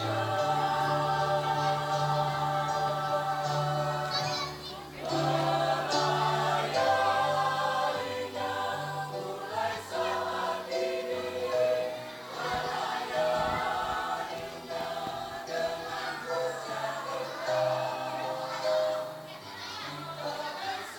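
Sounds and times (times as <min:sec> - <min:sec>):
choir singing a hymn: 0:00.0 - 0:20.9.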